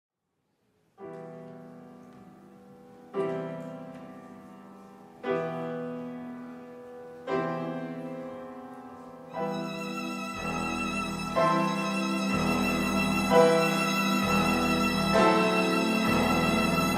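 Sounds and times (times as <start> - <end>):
piano chords ringing: 1.0 - 16.9
violin: 9.3 - 16.9.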